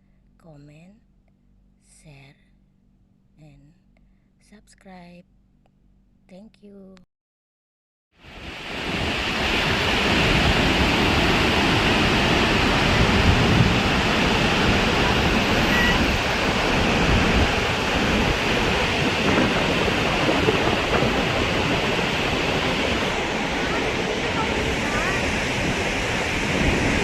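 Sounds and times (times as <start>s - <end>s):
floodwater rushing: 8.3s - 27.0s.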